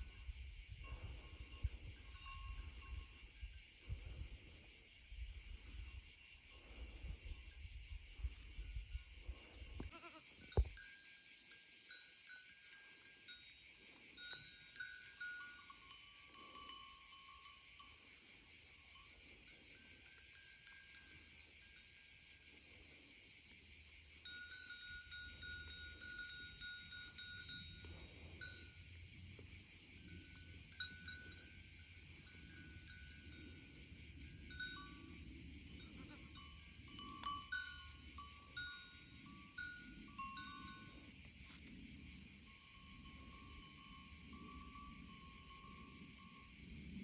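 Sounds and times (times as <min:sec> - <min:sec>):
insects chirring: 0:00.0 - 0:47.0
goats bleating: 0:09.9 - 0:10.2.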